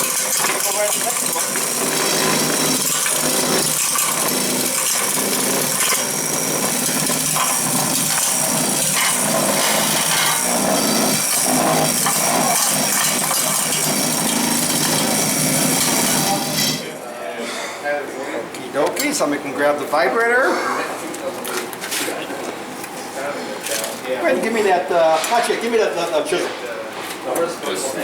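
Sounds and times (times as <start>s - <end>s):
power vibrator running: 0.0s - 17.0s.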